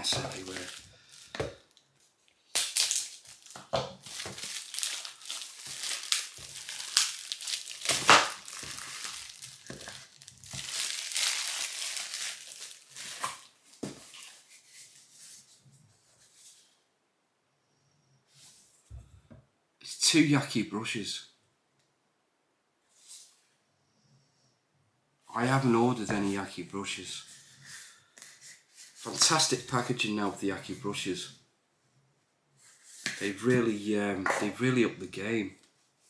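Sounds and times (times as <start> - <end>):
hands rustling shredded paper: 0.0 - 1.4, 2.5 - 15.1.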